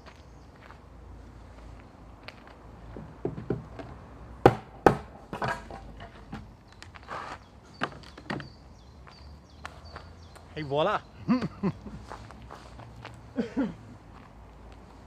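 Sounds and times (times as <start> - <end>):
hammer banging on wooden boards: 2.9 - 6.5.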